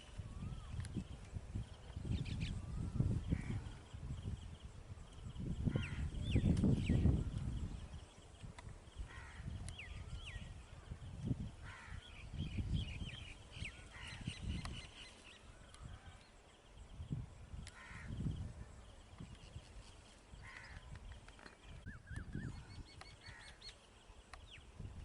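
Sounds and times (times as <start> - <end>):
small birds chirping: 0.0 - 25.0
crows cawing: 11.6 - 12.0, 17.7 - 18.1, 20.4 - 20.8.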